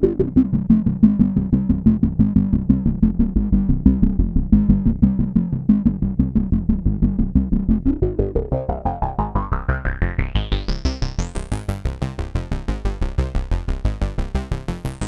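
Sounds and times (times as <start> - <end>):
synthesizer bass sequence: 0.0 - 15.0.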